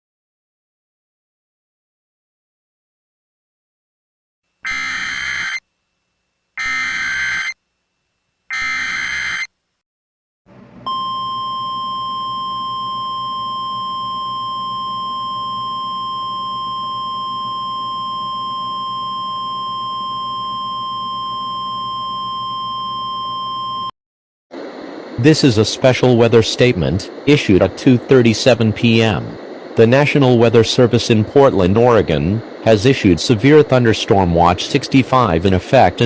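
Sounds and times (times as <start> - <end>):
screeching data bursts: 4.6 - 5.6, 6.6 - 7.6, 8.5 - 9.5
steady alert tone: 4.6 - 5.6, 6.6 - 7.6, 8.5 - 9.5.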